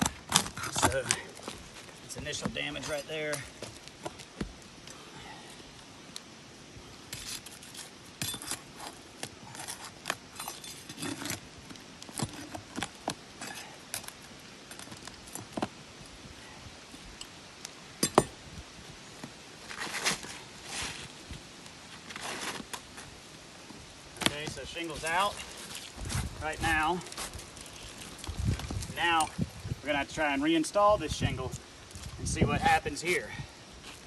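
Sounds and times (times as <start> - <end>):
shingle scraping and clinking: 0.0 - 4.3, 7.1 - 15.7.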